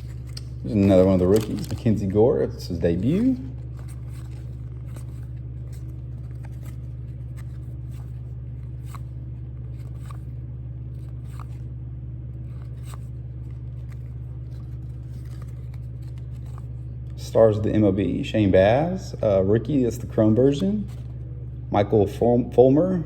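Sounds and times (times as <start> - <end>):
trading cards being flipped: 0.0 - 2.2, 2.8 - 11.6, 12.4 - 16.8
low hum: 0.0 - 23.0.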